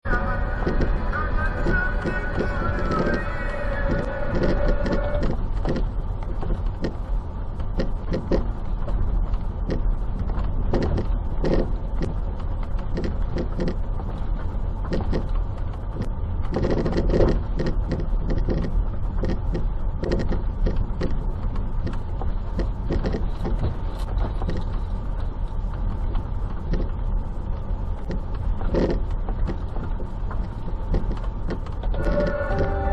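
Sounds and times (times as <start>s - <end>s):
rumble of moving car: 0.0s - 32.9s
suspension joint knocking: 14.9s - 24.8s.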